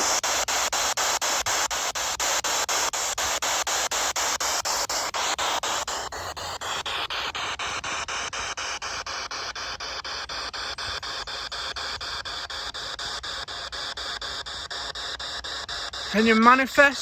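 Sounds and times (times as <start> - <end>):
choppy radio static hiss: 0.0 - 9.9, 15.9 - 17.0.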